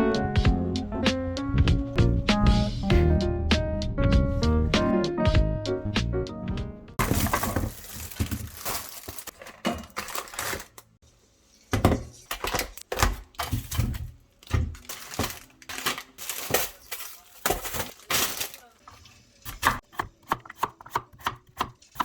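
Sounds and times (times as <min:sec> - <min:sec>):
piano background music: 0:00.0 - 0:09.2
objects being handled: 0:07.0 - 0:19.8.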